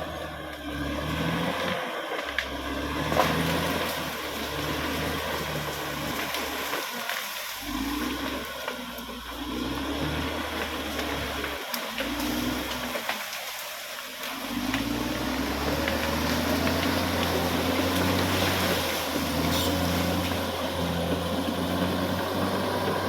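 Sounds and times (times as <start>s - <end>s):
bulldozer diesel engine under load: 0.0s - 23.0s.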